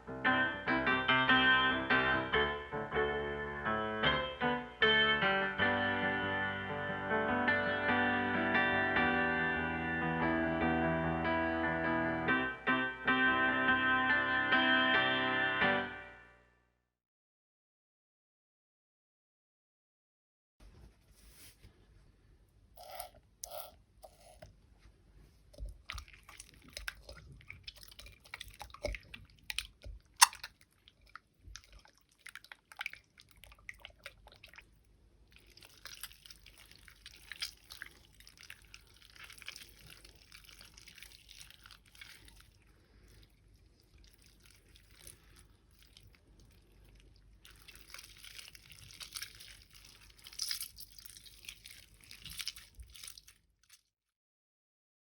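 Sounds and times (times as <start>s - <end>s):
sticky slime squishing: 25.4s - 53.9s
slime squelching and popping: 25.5s - 53.8s.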